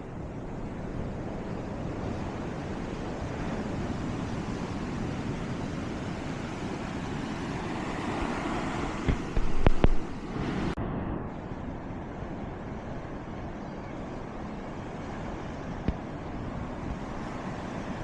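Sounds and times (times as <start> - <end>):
wind on microphone: 0.0 - 18.0
surf washing onto shore: 0.5 - 10.8, 14.2 - 18.0.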